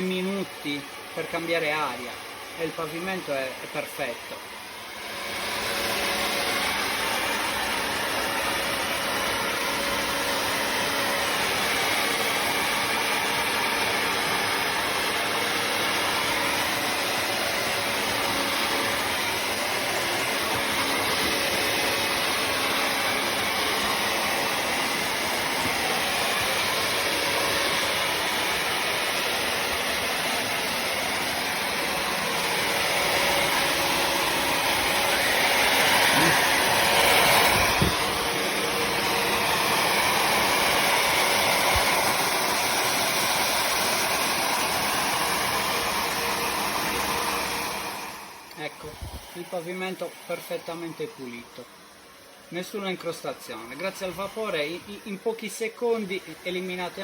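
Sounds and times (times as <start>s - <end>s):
vacuum mop motor whine: 0.0s - 57.0s.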